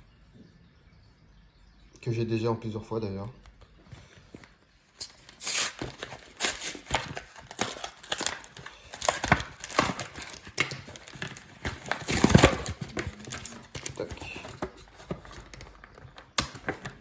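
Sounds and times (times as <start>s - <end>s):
packaging crinkling and tearing: 5.0s - 17.0s.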